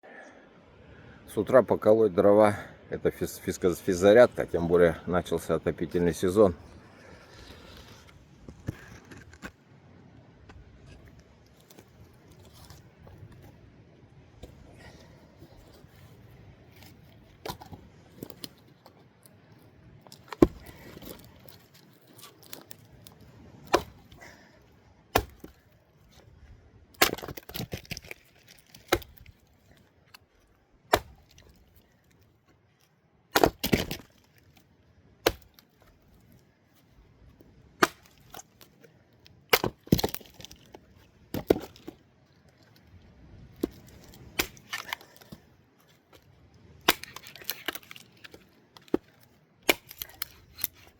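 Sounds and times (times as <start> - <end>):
wood crackling as it splits: 3.4 - 9.6, 10.8 - 13.6, 14.4 - 50.9
axe blows on logs: 25.1 - 25.5.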